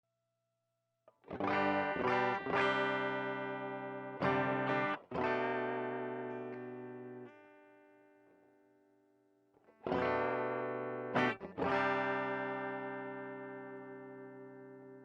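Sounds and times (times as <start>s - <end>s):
distorted electric guitar chords: 1.3s - 7.3s, 9.9s - 15.0s.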